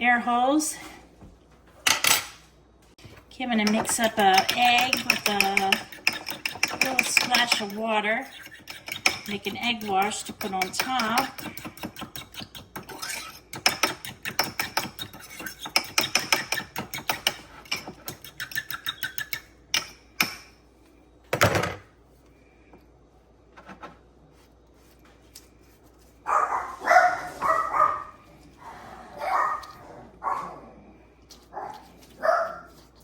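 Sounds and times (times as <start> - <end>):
fork beating egg in bowl: 3.6 - 20.4, 31.1 - 33.0
dog barking: 26.3 - 28.2, 29.1 - 30.6, 31.5 - 32.7.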